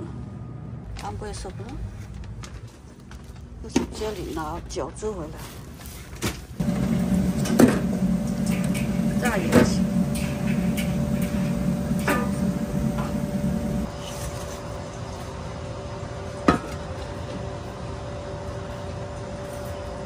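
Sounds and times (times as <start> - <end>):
machine hum: 6.6 - 14.0.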